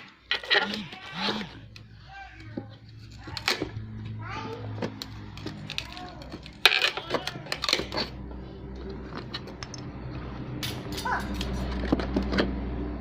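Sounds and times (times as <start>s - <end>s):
parcel clicks and rustles: 0.0s - 9.9s.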